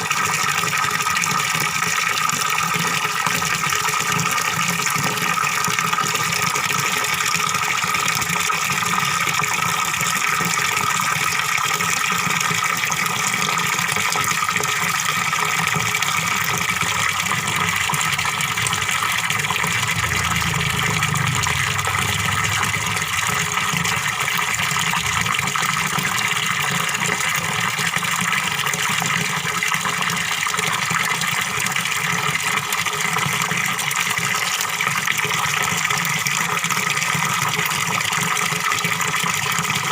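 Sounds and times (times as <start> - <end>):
small waterfall splashing: 0.0 - 39.9.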